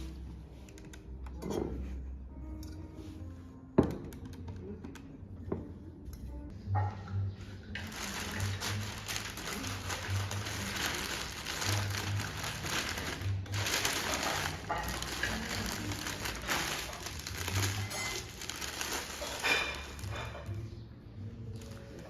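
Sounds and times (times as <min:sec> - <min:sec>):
paper crinkling and crumpling: 0:07.6 - 0:20.7, 0:21.5 - 0:22.0.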